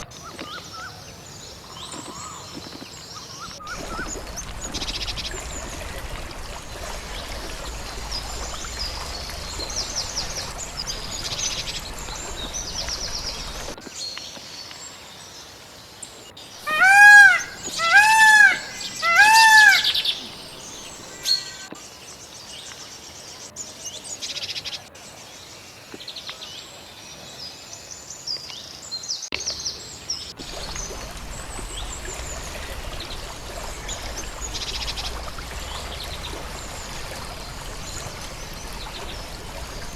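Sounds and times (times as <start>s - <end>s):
background hiss: 3.6s - 13.8s, 16.6s - 21.5s, 30.4s - 39.9s
birds chirping and singing: 3.7s - 13.8s, 16.7s - 21.3s, 30.4s - 39.9s
loud rising and falling bird calls: 3.7s - 13.8s, 16.7s - 21.5s, 30.4s - 39.9s.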